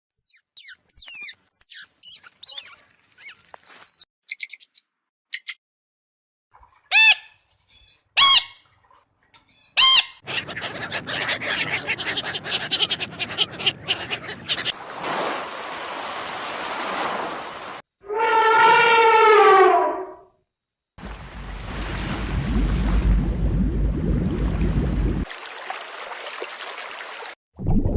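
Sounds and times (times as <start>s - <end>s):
loud short animal calls: 9.8s - 14.8s
pitched animal call: 9.8s - 14.8s.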